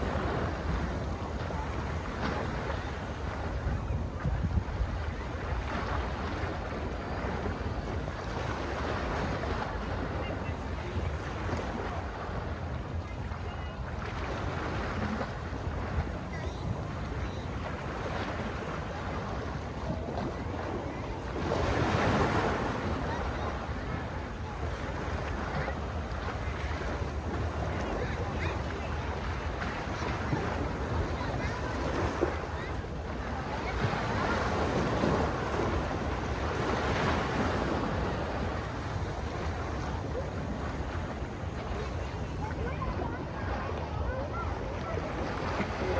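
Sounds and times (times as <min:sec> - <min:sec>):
ocean surf washing in: 0:00.0 - 0:12.6
sea waves washing onto beach: 0:00.0 - 0:45.9
wind rumbling on microphone: 0:00.0 - 0:45.9.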